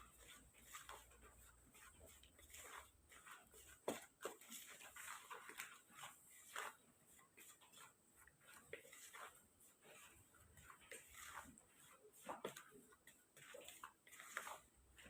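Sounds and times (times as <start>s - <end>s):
spoon scraping in bowl: 7.4s - 12.7s.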